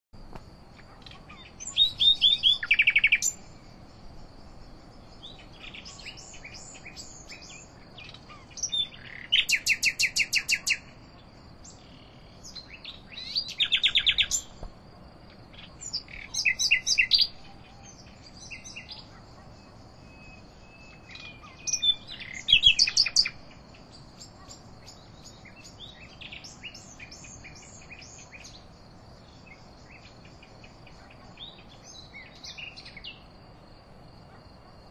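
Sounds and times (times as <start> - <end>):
insects buzzing: 0.2 - 34.9
songbird singing: 0.2 - 34.9.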